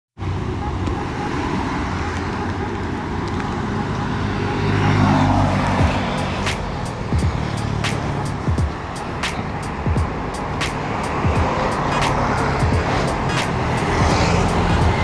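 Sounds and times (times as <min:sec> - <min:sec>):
motorcycle engine revving: 0:11.1 - 0:15.0.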